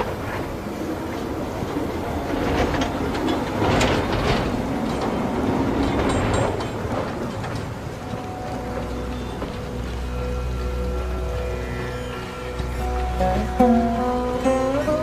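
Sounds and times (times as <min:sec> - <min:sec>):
train wheels clattering over rails: 0:00.0 - 0:15.0
wheel squeals: 0:00.0 - 0:15.0
music: 0:08.0 - 0:15.0.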